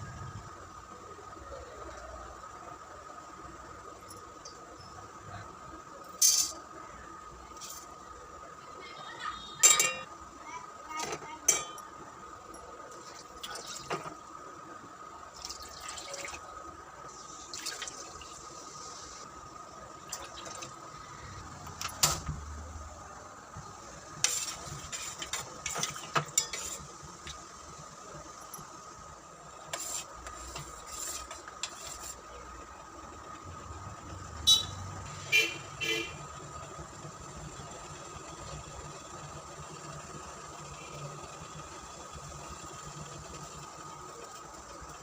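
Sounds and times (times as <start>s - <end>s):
faint steady high tone: 3.8s - 7.3s, 8.3s - 13.0s
utensils clinking against dishes: 6.2s - 6.6s, 9.6s - 10.1s, 11.4s - 11.9s, 24.2s - 26.9s.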